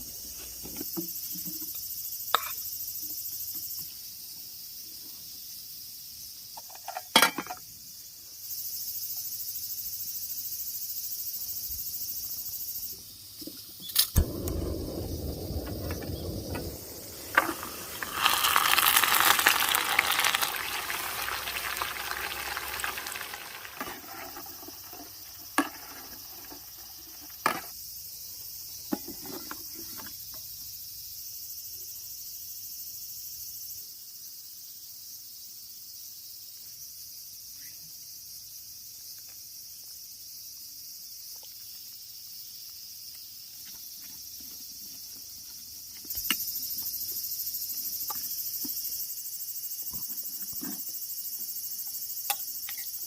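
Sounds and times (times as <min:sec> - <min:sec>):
insects chirring: 0:00.0 - 0:53.0
broad hiss: 0:12.8 - 0:27.7.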